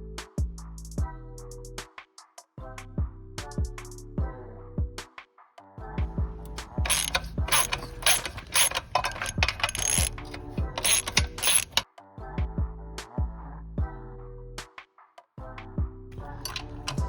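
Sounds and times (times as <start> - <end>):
ratchet tool clicking: 6.5 - 11.8, 16.2 - 17.0.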